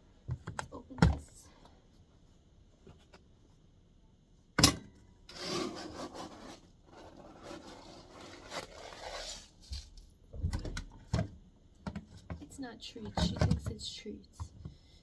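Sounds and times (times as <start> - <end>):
scraping and rustling salt: 5.3 - 9.6.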